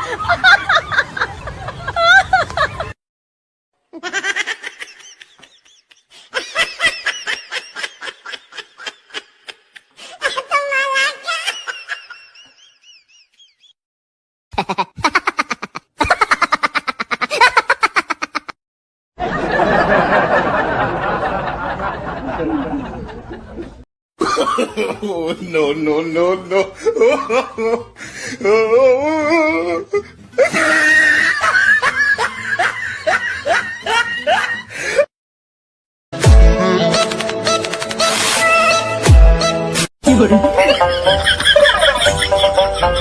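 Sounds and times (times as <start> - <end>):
person laughing: 4.0 - 10.6, 14.6 - 18.6, 26.4 - 35.0, 40.0 - 43.0.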